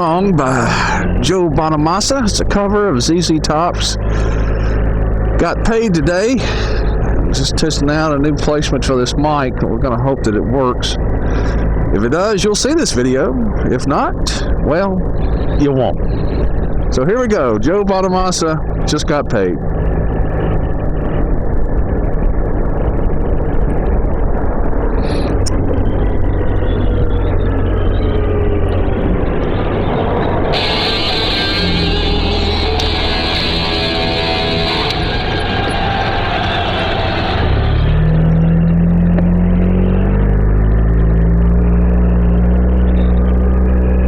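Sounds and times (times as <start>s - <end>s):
motorcycle engine: 0.0s - 44.0s
wind noise: 8.2s - 38.7s.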